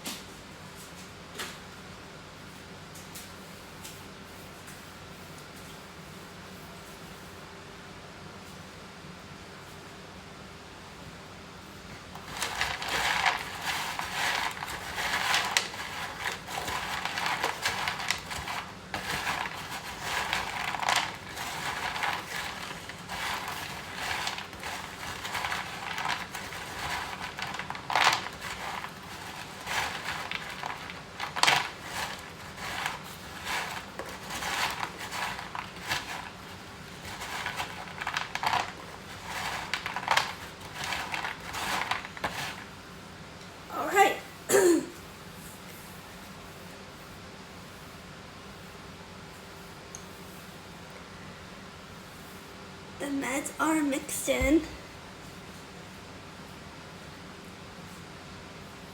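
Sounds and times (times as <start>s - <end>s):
utensil scraping and mashing food: 12.0s - 42.8s.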